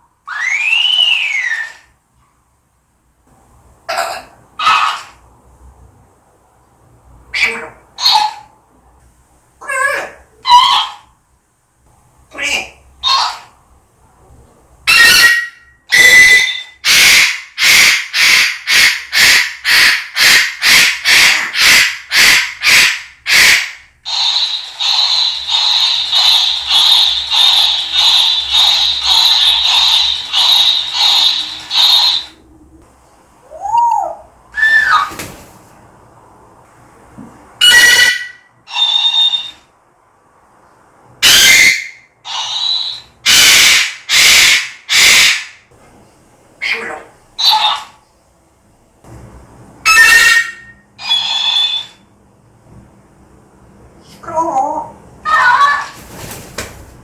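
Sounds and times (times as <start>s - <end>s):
parrot screeching: 0.2s - 1.9s, 4.6s - 5.2s, 7.3s - 8.5s, 9.6s - 11.1s, 12.3s - 13.5s, 14.9s - 32.4s, 33.5s - 35.2s, 37.6s - 39.7s, 41.2s - 45.6s, 46.6s - 48.0s, 49.8s - 52.0s, 55.2s - 56.0s.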